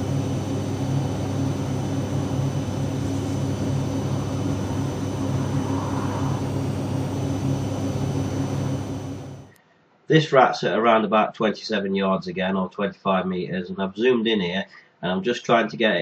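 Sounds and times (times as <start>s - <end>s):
machine hum: 0.0s - 9.6s.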